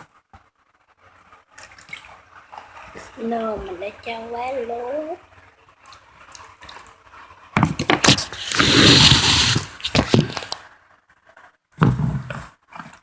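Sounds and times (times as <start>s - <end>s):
slime scraping in container: 7.9s - 10.6s
loud rushing scrape: 8.0s - 10.6s.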